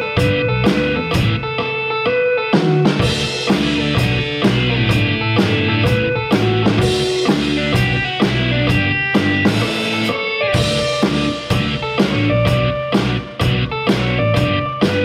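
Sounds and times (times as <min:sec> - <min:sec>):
drum kit rock beat: 0:00.0 - 0:15.0
guitar rock backing track: 0:00.0 - 0:15.0.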